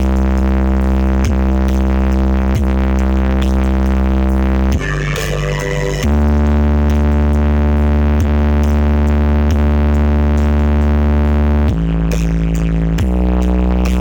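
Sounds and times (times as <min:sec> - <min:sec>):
deep bass synth note: 0:00.0 - 0:14.0
electronic dance music: 0:00.0 - 0:14.0.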